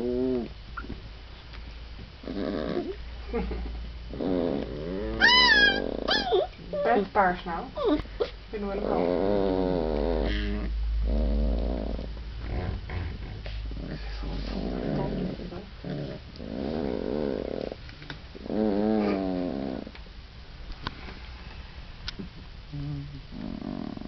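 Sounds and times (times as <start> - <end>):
puppies whining and grumbling: 0.0 - 1.0, 2.2 - 3.1, 4.1 - 20.0.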